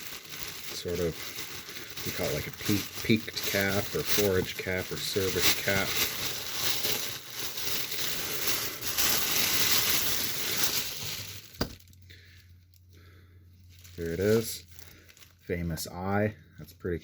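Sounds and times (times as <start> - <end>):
packaging crinkling and rustling: 0.0 - 12.9, 13.6 - 15.7.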